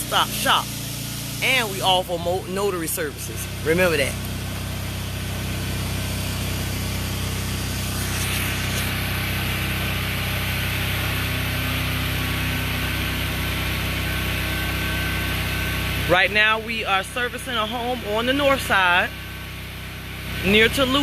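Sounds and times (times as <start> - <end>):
high-pressure water spray hissing: 0.0 - 16.6
pressure washer engine running: 0.0 - 21.0.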